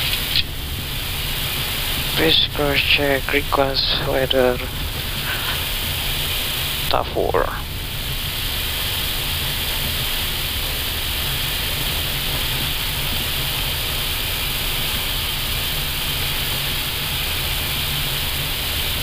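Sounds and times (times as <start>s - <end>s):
ventilation hiss: 0.0s - 19.0s.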